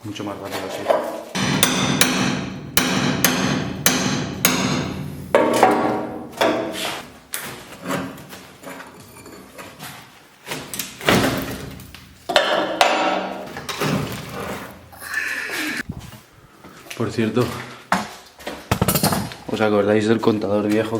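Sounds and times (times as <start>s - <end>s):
heavy hammer blows ringing: 1.4s - 6.8s.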